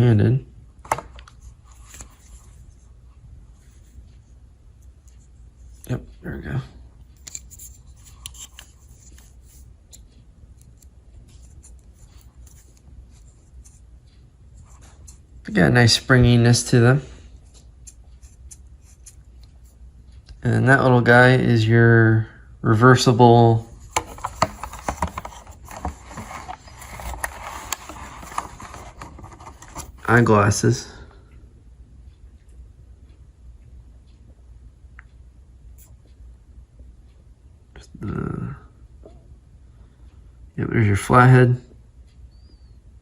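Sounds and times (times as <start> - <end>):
low steady hum: 0.0 - 43.0
multi-tool metal clicks and scrapes: 7.1 - 13.8.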